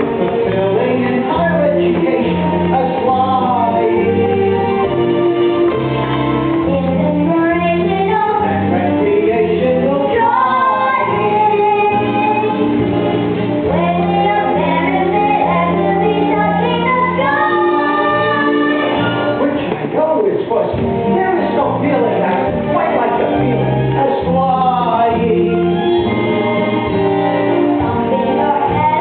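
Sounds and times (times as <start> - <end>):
instrumental accompaniment: 0.0 - 29.0
woman singing show tune: 13.7 - 19.2.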